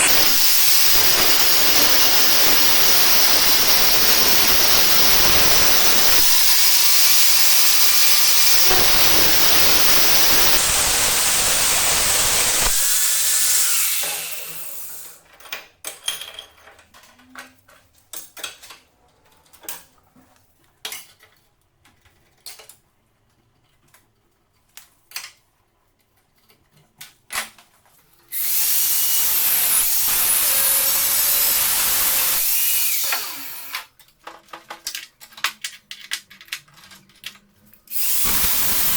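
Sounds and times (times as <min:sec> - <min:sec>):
power tool running: 0:00.0 - 0:15.1, 0:28.4 - 0:33.9, 0:37.9 - 0:38.9
knocks and clinks of parts: 0:15.3 - 0:18.8.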